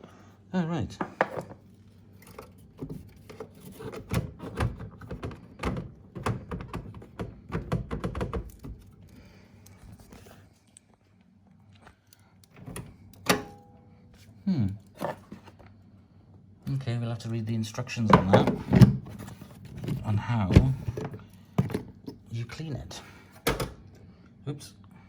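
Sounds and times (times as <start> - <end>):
plastic parts clicking and thunking: 2.2 - 9.2, 18.0 - 22.3, 23.4 - 23.8.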